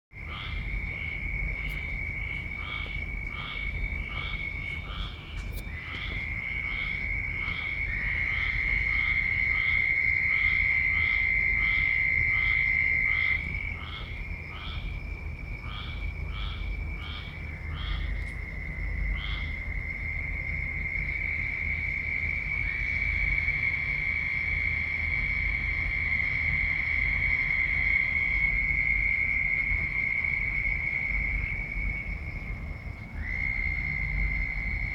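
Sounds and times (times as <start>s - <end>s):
repeated short frog call: 0.2s - 14.9s
frogs trilling: 0.2s - 34.9s.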